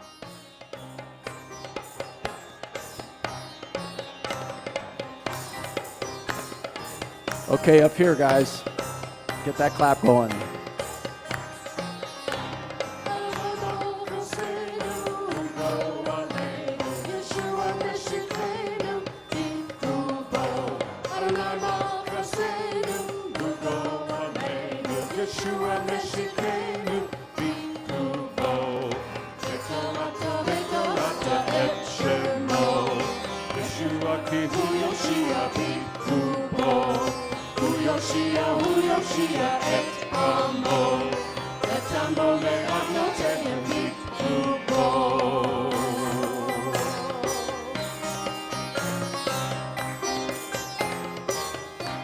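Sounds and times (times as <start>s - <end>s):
percussion: 0.0s - 52.0s
worship band music: 7.5s - 8.8s, 9.4s - 10.5s, 29.5s - 37.0s, 37.6s - 47.5s.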